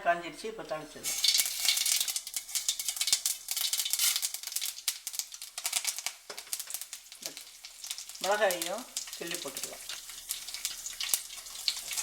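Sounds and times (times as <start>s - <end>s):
seeds popping in hot oil: 0.7s - 12.0s.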